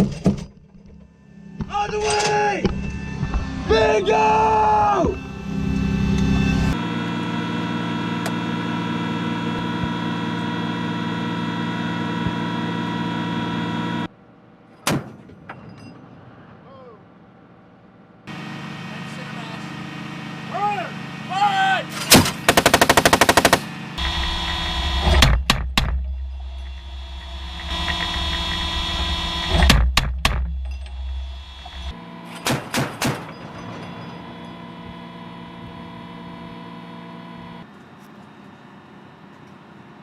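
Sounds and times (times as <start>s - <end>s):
chain gun firing bursts: 22.0s - 23.7s
low rumble: 24.0s - 32.0s.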